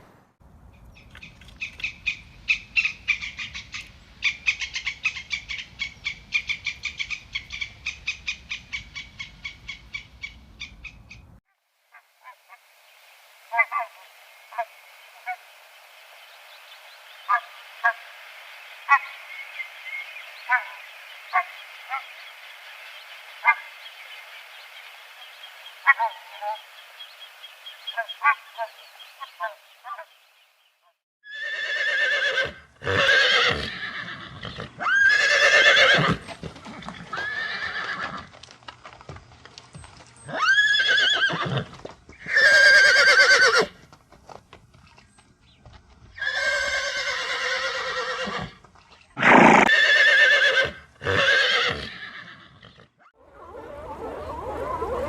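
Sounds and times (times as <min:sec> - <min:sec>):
bird calls: 0:00.7 - 0:12.6, 0:16.2 - 0:31.0
horse neighing: 0:31.3 - 0:38.3, 0:40.3 - 0:43.7, 0:46.2 - 0:48.6, 0:49.2 - 0:52.9
animal wavering calls: 0:53.1 - 0:55.0.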